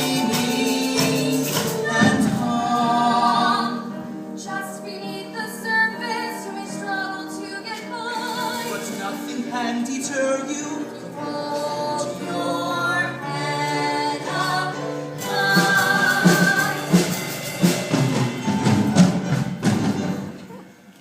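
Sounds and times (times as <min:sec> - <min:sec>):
voices singing held notes: 0:00.0 - 0:07.5, 0:08.2 - 0:17.3
musical accompaniment: 0:00.0 - 0:21.0.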